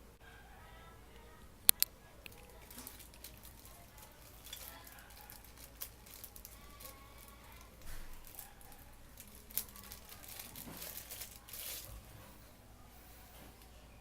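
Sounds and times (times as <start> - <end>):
sharp clicks: 1.6 - 2.4
packaging crinkling: 1.7 - 12.1.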